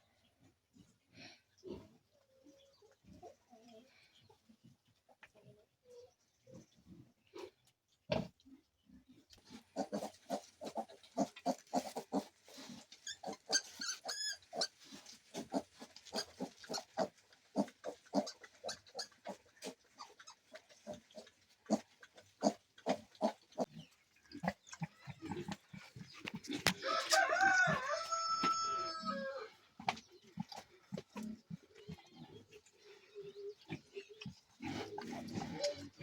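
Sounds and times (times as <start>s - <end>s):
pigs grunting: 9.5s - 26.8s, 30.3s - 36.0s
pig squealing: 13.1s - 14.8s.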